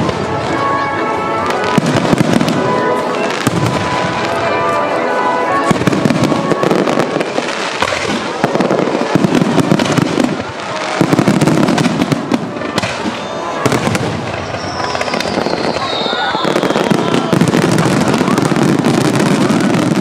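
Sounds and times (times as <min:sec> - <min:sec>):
fireworks bangs and crackles: 0:00.0 - 0:20.0
high falling whistle: 0:14.3 - 0:17.4.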